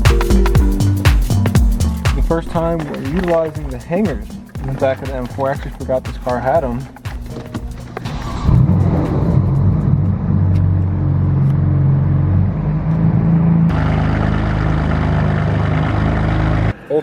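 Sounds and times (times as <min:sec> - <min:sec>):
loud car engine idling: 0:07.8 - 0:16.8.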